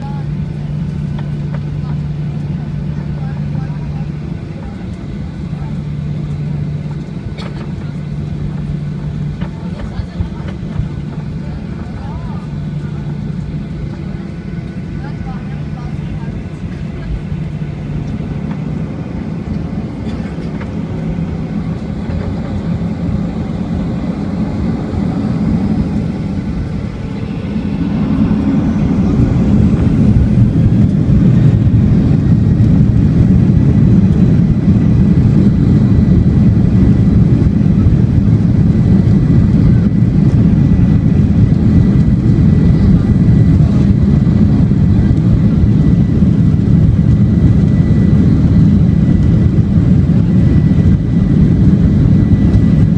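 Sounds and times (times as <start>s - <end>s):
jet engines spooling up: 16.0s - 52.9s.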